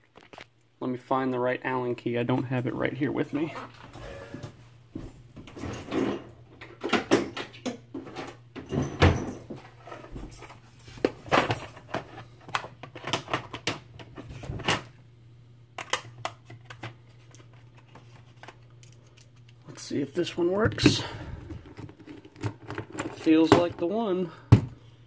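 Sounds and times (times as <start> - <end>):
steady low hum: 13.6 - 25.0.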